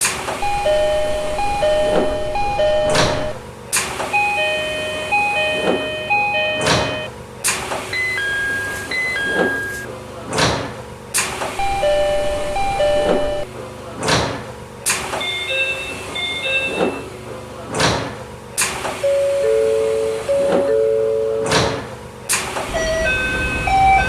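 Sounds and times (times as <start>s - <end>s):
doors shutting with thump: 0.4s - 3.5s, 10.3s - 10.8s, 11.6s - 14.5s, 17.7s - 18.2s
sliding doors rushing: 0.4s - 3.5s, 11.4s - 13.5s, 22.5s - 24.0s
train hum: 0.4s - 3.5s, 11.6s - 13.5s, 22.7s - 24.0s
two-note door chime: 0.4s - 3.5s, 4.2s - 7.1s, 11.6s - 13.5s, 19.0s - 22.0s, 22.7s - 24.0s.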